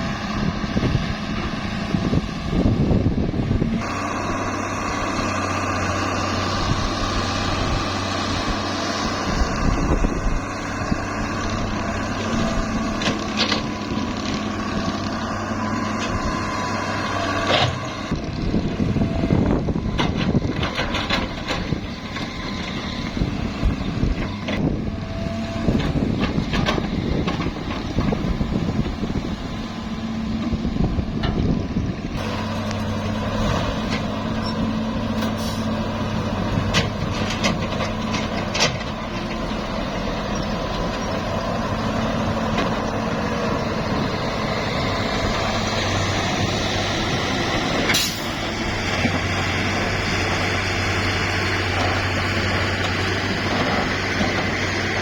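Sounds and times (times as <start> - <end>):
diesel engine running: 0.0 - 55.0
machinery knocks and clatter: 19.6 - 22.7, 25.6 - 29.0, 36.4 - 39.4.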